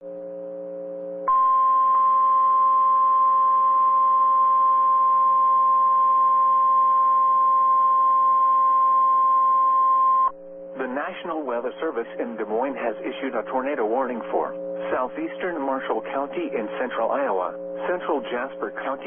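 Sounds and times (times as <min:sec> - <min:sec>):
steady loud alarm tone: 0:01.3 - 0:11.0, 0:12.4 - 0:19.0
low radio hum: 0:06.6 - 0:19.0.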